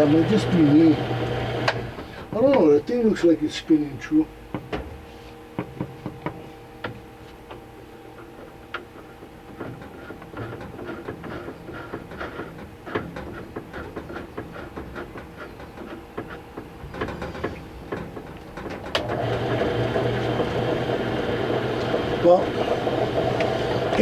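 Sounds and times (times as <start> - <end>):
spindle motor humming: 0.0 - 24.0
tooling clicking and tapping: 8.2 - 19.1.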